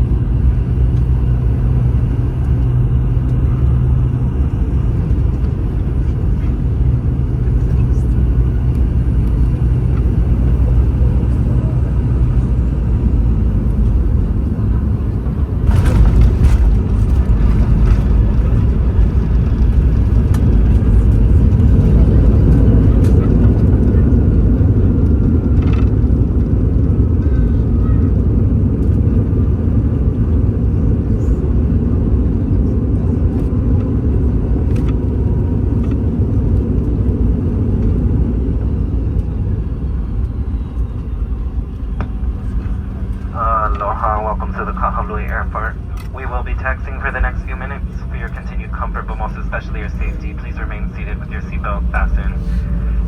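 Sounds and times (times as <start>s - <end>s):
jet cabin rumble: 0.0s - 53.0s.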